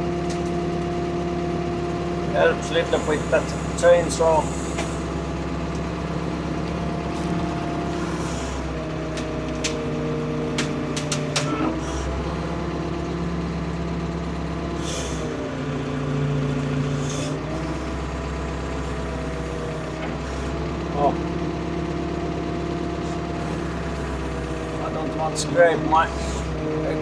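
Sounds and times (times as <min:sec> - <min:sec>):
excavator diesel engine: 0:00.0 - 0:27.0
hydraulic hissing bursts: 0:02.6 - 0:05.6, 0:07.0 - 0:09.9.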